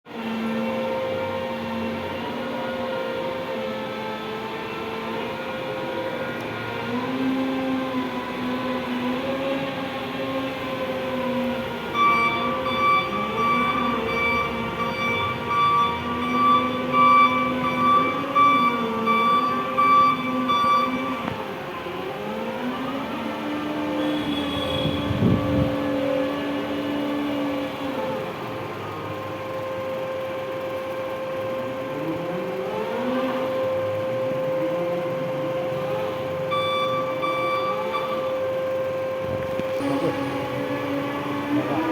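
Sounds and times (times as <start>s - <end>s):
forklift engine running: 0.1s - 41.9s
high warning beeper: 11.8s - 21.4s, 35.8s - 38.8s, 39.7s - 41.9s.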